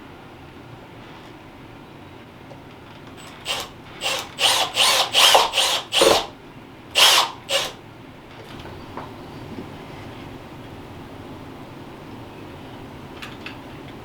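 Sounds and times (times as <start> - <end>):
power drill driving screws: 3.2 - 6.3, 7.0 - 7.8.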